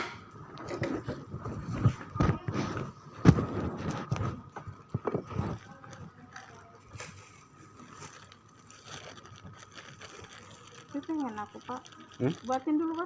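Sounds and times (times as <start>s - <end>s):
items knocking and clattering: 0.0s - 6.6s
faint steady whine: 0.0s - 13.0s.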